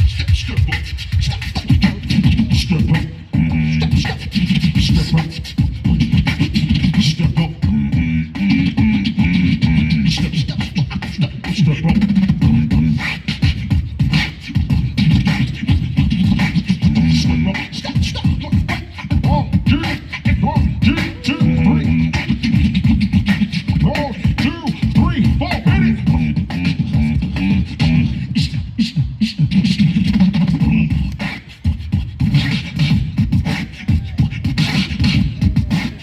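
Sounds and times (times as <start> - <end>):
beatboxing through microphone: 0.0 - 36.0.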